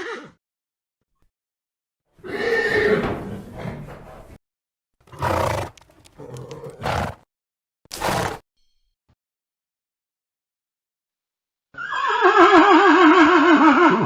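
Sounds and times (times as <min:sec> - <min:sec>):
horse whinnying: 0:02.2 - 0:04.4, 0:05.1 - 0:07.2, 0:11.8 - 0:14.0.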